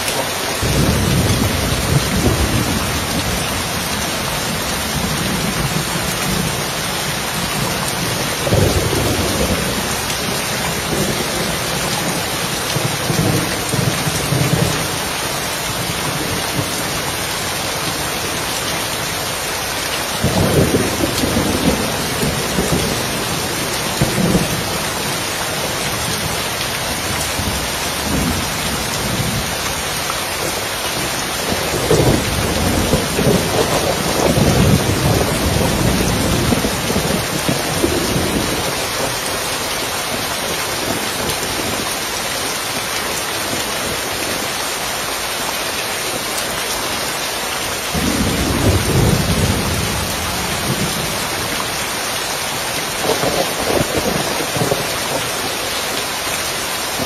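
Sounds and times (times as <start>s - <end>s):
heavy rain on a roof: 0.0s - 57.0s
thunder rumbling: 0.6s - 15.0s, 20.2s - 39.5s, 47.9s - 51.6s, 52.8s - 55.7s.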